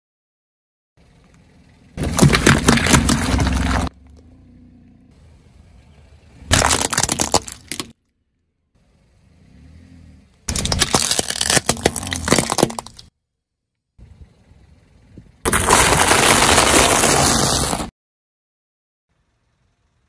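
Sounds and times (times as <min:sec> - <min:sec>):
low engine rumble: 0:01.0 - 0:10.8, 0:14.0 - 0:15.5
tyre crushing brittle objects: 0:02.0 - 0:03.9, 0:06.5 - 0:08.0, 0:10.5 - 0:13.1, 0:15.5 - 0:17.9.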